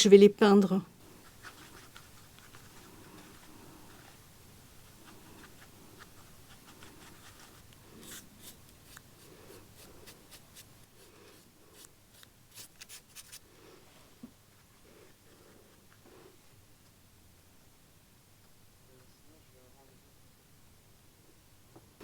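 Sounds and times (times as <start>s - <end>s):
faint scratching of hand work: 1.0s - 16.5s.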